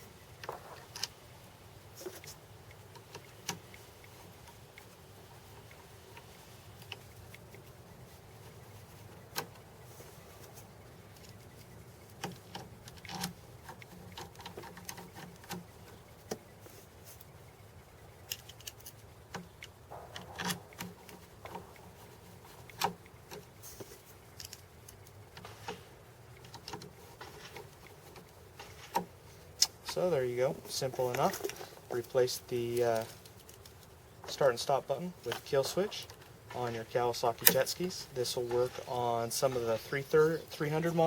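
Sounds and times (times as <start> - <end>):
faint low hum: 0.0 - 41.0
small hard parts clicking: 2.0 - 16.5, 18.0 - 34.5.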